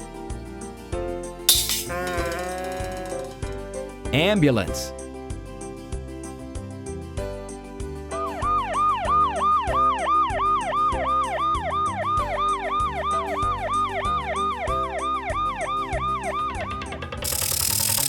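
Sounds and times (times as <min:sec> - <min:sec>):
ambulance siren wailing: 0:08.4 - 0:16.5.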